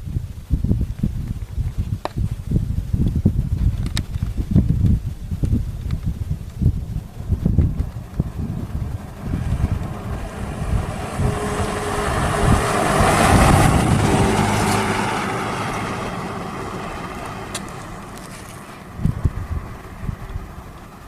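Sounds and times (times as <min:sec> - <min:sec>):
wind rumbling on microphone: 0:00.0 - 0:21.0
motor vehicle driving past: 0:06.9 - 0:21.0.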